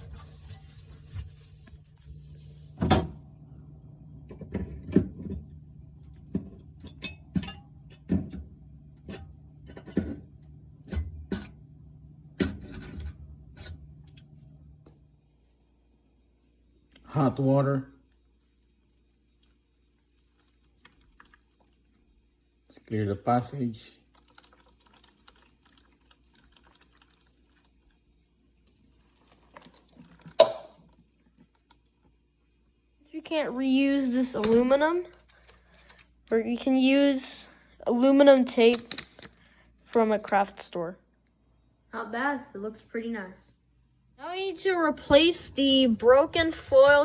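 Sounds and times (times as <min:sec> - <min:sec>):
steady low hum: 0:00.0 - 0:16.2, 0:43.5 - 0:47.0.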